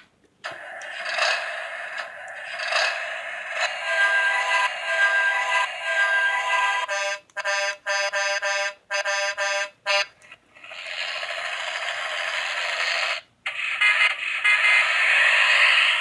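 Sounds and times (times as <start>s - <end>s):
horn-like beeping honks: 3.8s - 10.1s.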